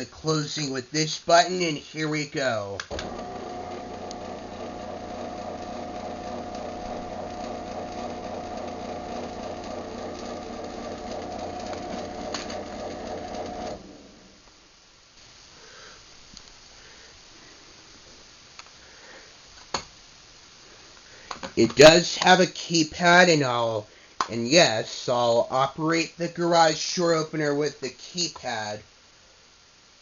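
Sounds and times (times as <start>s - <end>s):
garage door opener motor humming: 2.9s - 14.4s.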